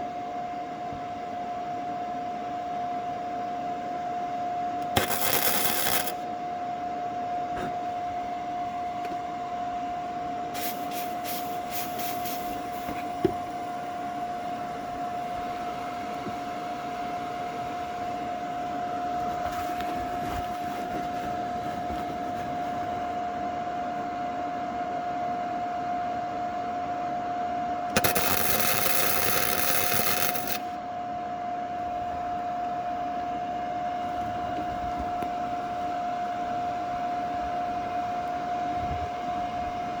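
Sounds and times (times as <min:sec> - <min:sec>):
welder hum with high whine: 0:00.0 - 0:40.0
welding arc crackling hiss: 0:04.8 - 0:06.2, 0:10.6 - 0:14.1, 0:27.9 - 0:30.8.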